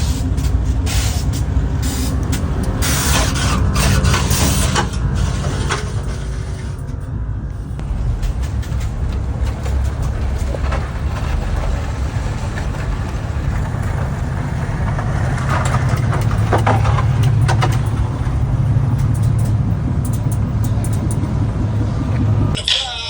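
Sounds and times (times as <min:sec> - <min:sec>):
truck engine rumbling: 0:00.0 - 0:23.0.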